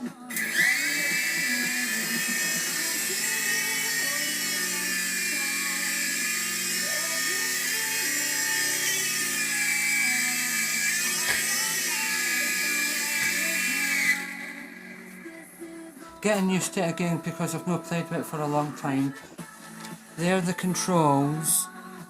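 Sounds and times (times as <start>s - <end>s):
toy helicopter motor whine: 0.3s - 15.8s.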